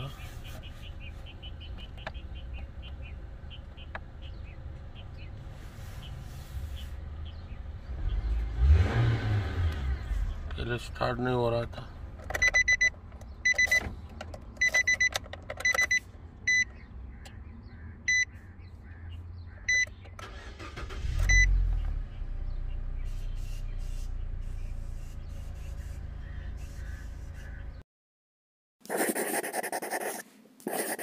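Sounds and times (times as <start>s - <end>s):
car engine cranking and idling: 7.2s - 17.9s, 18.9s - 27.7s
car warning chime beeping: 12.3s - 13.9s, 14.6s - 16.8s, 18.1s - 18.3s, 19.7s - 20.0s, 20.6s - 21.6s.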